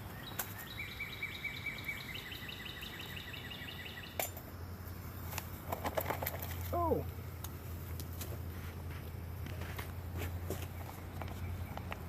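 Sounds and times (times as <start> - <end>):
birds chirping trills: 0.0 - 7.4, 10.0 - 12.0
low steady hum: 0.0 - 12.0.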